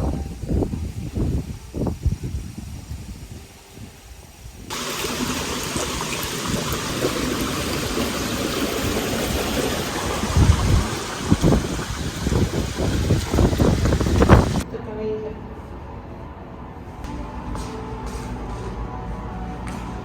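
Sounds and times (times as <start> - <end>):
rushing water: 4.7 - 14.6.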